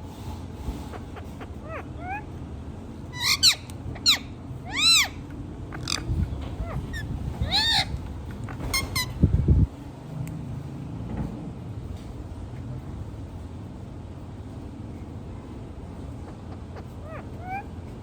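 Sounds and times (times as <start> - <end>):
parakeet screeching calls: 0.8 - 2.4, 3.1 - 8.0, 16.2 - 17.8.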